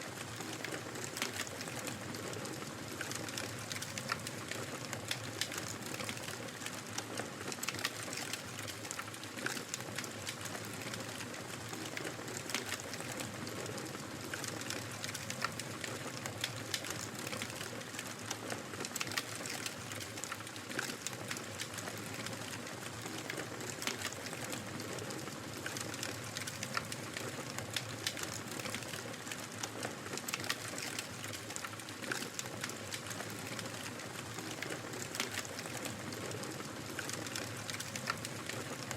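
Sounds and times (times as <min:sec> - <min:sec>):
wood fire crackling: 0:00.0 - 0:38.9.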